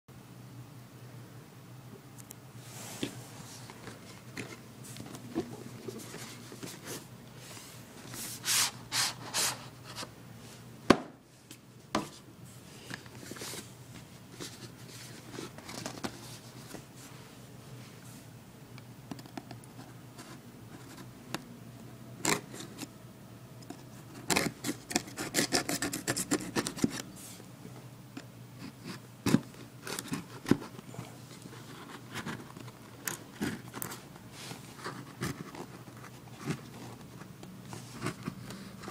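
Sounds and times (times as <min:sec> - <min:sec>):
cardboard and plastic scraping: 0:02.8 - 0:08.4.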